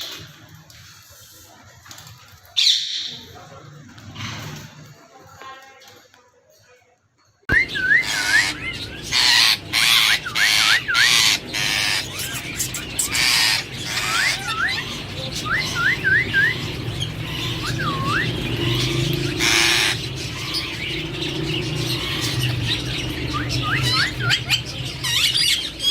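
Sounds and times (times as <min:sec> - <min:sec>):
low background hum: 0:07.5 - 0:25.9
parakeet whistles and screeches: 0:07.5 - 0:25.9.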